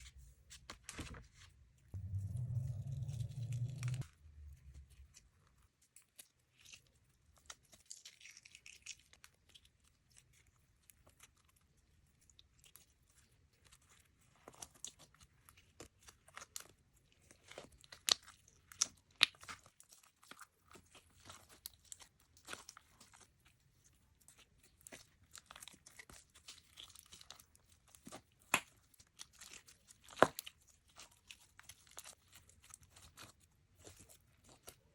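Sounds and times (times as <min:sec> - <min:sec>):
low rumble: 0:02.0 - 0:05.2.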